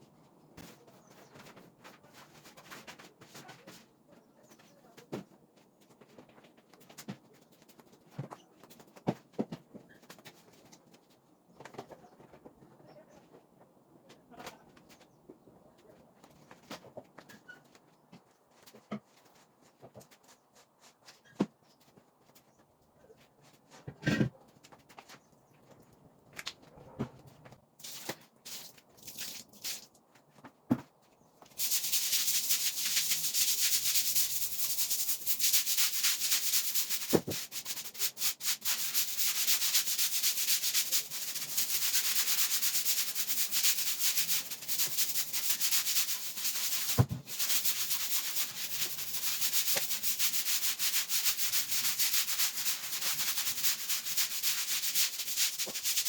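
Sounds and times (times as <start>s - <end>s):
rapid scrubbing rasp: 31.6s - 56.0s.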